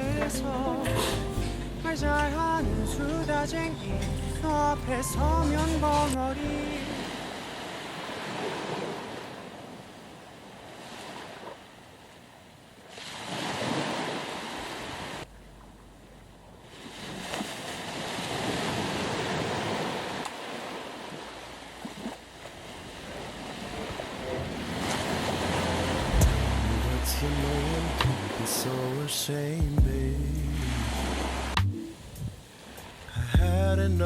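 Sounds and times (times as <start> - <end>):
sea waves breaking on beach: 5.6 - 15.3, 16.6 - 33.3.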